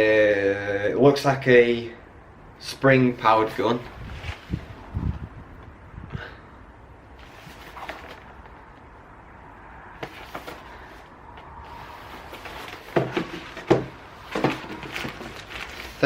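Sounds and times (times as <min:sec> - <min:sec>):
packaging rustling: 0:07.2 - 0:08.5, 0:11.7 - 0:16.0
knocks on boxes: 0:12.8 - 0:15.3.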